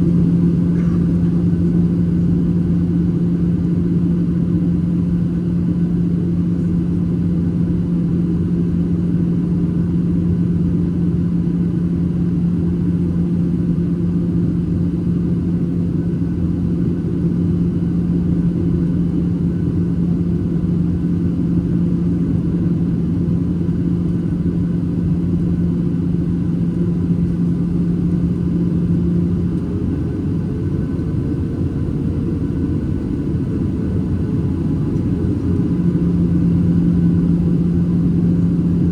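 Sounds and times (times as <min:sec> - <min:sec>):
low steady hum: 0:00.0 - 0:07.0, 0:32.1 - 0:38.9
jet engine cabin rumble: 0:00.0 - 0:38.9.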